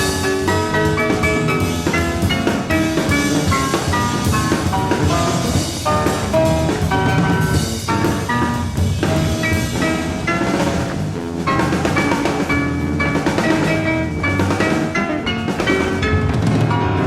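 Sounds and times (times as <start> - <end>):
jazz piano trio playing: 0.0 - 17.0.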